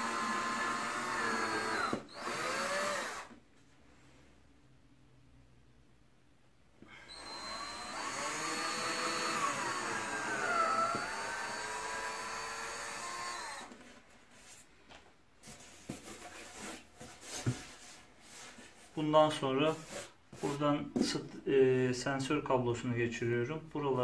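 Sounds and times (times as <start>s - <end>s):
electric drill boring into foam: 0.0s - 3.4s, 7.0s - 13.8s
handling knocks and rustles: 13.7s - 18.9s.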